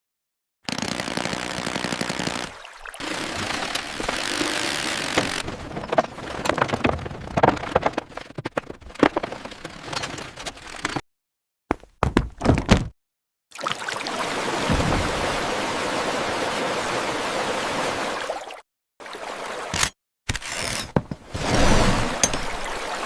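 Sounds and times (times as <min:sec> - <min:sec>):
rapid mechanical rattle: 0:03.0 - 0:11.0.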